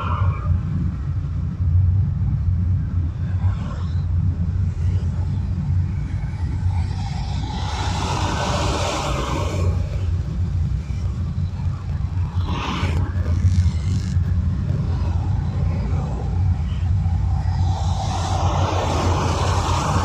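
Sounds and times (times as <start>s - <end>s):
car road noise rumble: 0.0s - 20.0s
vehicle passing: 12.3s - 20.0s.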